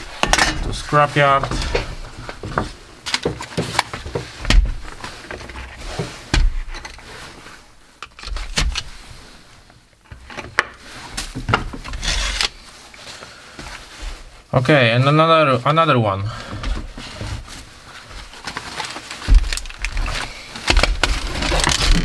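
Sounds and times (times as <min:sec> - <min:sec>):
rubbing and scraping: 0:00.0 - 0:07.6, 0:16.4 - 0:22.0
small parts clicking and knocking: 0:18.6 - 0:22.0
dull thumps: 0:19.2 - 0:22.0.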